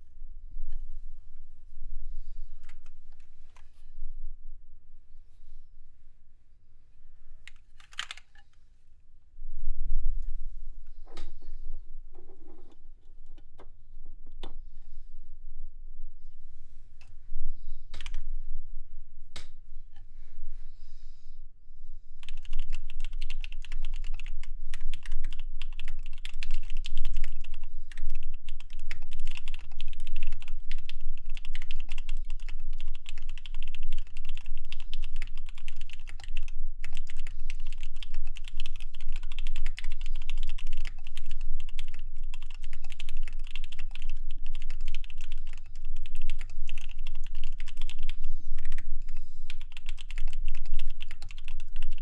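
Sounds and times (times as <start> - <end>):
fast keyboard typing clacks: 22.2 - 52.0.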